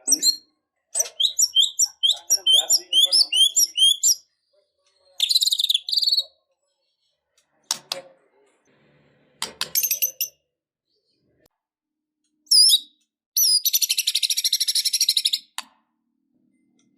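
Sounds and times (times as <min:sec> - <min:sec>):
bird whistling song: 0:01.0 - 0:04.2, 0:05.2 - 0:06.3, 0:12.5 - 0:15.6.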